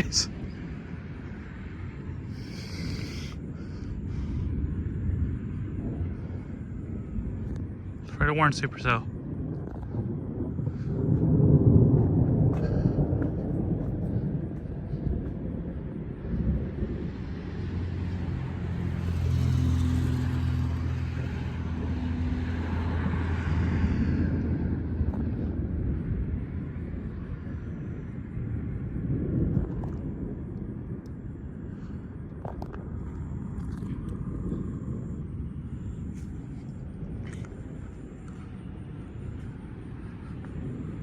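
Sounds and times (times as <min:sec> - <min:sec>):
wind rumbling on microphone: 0:00.0 - 0:41.0
motor vehicle passing: 0:17.2 - 0:24.6.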